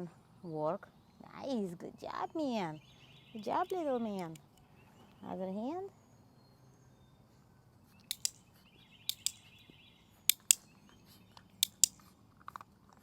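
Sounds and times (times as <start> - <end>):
dog training clicker clicks: 8.1 - 8.4, 9.1 - 9.4, 10.3 - 10.6, 11.6 - 12.0.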